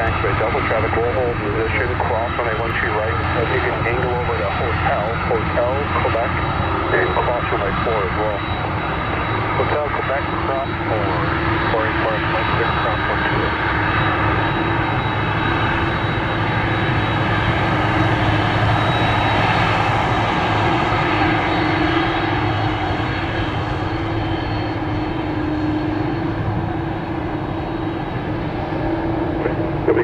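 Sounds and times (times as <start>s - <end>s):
high turbine whine: 0.0s - 30.0s
jet engines running: 0.0s - 30.0s.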